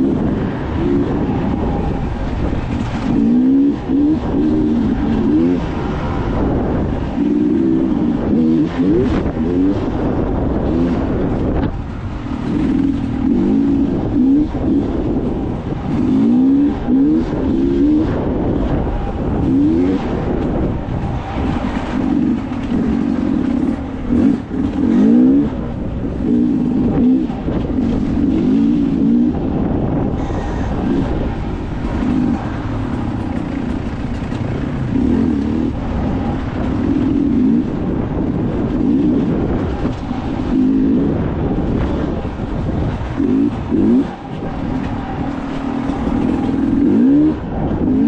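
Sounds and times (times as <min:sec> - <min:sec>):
off-road vehicle engine revving: 0:00.0 - 0:48.0.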